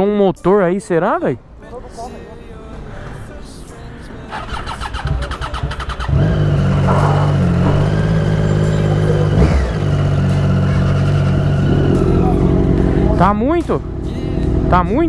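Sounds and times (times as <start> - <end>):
motorcycle engine revving: 2.7 - 14.7.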